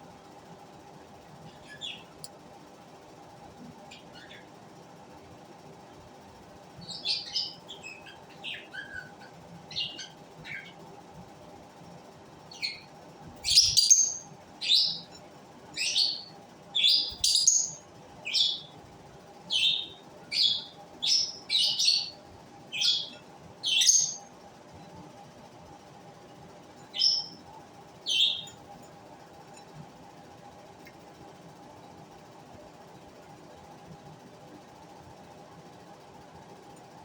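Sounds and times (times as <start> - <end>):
shrill bird calls: 12.5 - 15.2, 15.8 - 18.7, 19.5 - 24.3, 26.9 - 27.4, 28.0 - 28.5
lovebirds chirping: 13.4 - 15.1, 15.8 - 18.7, 19.5 - 24.2, 28.1 - 28.6.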